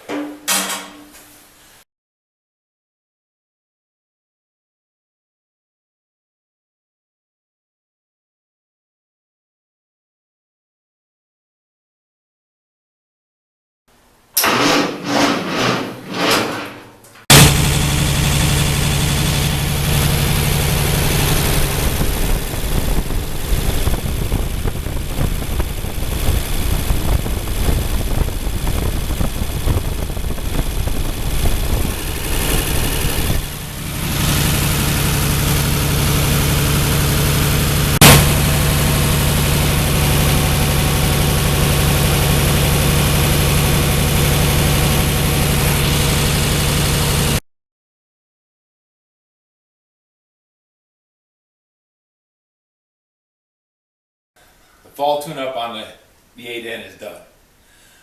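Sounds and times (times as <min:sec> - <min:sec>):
tractor engine running: 0:17.3 - 0:47.4.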